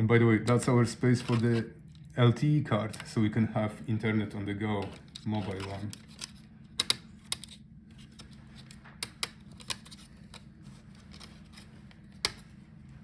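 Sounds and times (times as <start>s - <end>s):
tools clicking on plastic: 4.8s - 12.5s.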